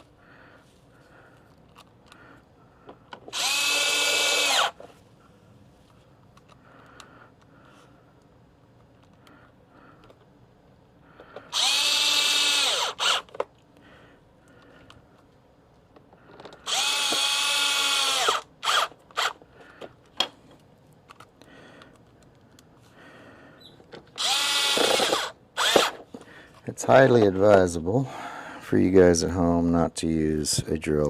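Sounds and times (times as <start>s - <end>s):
power drill driving screws: 3.3s - 4.8s, 11.5s - 13.4s, 16.6s - 19.4s, 24.2s - 26.0s.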